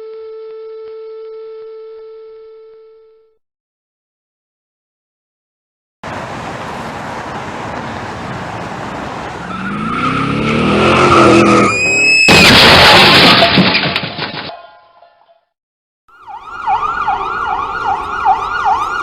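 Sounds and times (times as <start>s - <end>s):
car driving with road noise: 6.0s - 11.8s
tyres squealing in a skid: 9.2s - 13.6s
loud car crash: 9.6s - 14.6s
crunching debris: 12.2s - 14.6s.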